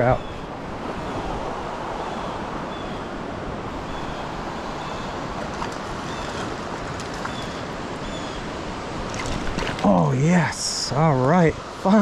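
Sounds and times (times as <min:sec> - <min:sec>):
creek water flowing: 0:04.3 - 0:10.3.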